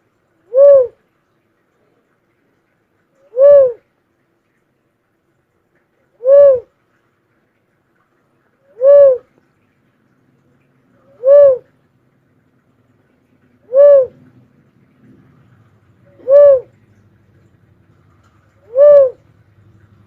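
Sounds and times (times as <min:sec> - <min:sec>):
bird hooting: 0:00.5 - 0:01.0, 0:03.3 - 0:03.8, 0:06.2 - 0:06.7, 0:08.7 - 0:09.3, 0:11.1 - 0:11.7, 0:13.6 - 0:14.2, 0:16.1 - 0:16.8, 0:18.6 - 0:19.2.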